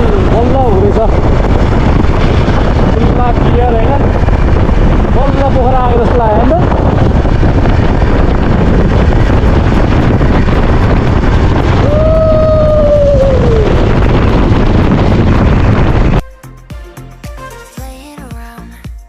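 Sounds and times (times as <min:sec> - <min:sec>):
wind buffeting microphone: 0:00.0 - 0:16.2
music: 0:16.2 - 0:19.0.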